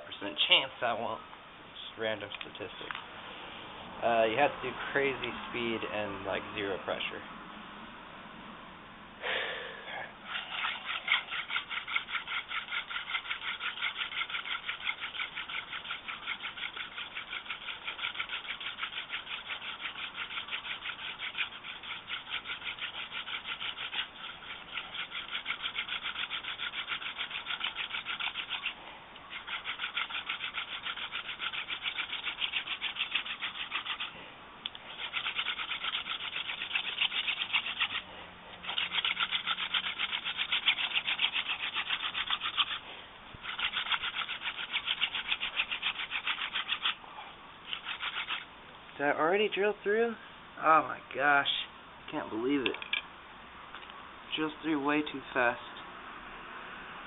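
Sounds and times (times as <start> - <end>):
wooden hand drill squeaking: 10.3 - 42.8, 43.4 - 47.0, 47.7 - 48.5.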